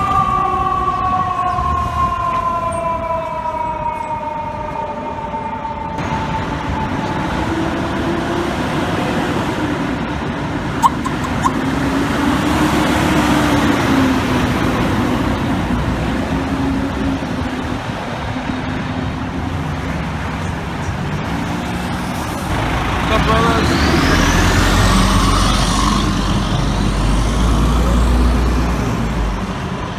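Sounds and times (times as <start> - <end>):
vehicles passing: 0.0 - 29.9
low engine tone rising and falling: 6.0 - 29.9
short sharp blips: 10.8 - 11.6.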